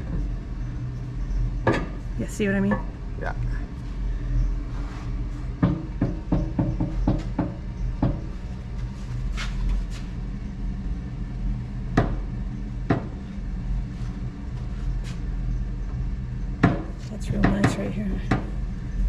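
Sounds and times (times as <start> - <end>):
low hum: 0.0 - 19.0
tools knocking on metal: 5.6 - 8.2, 17.3 - 18.5.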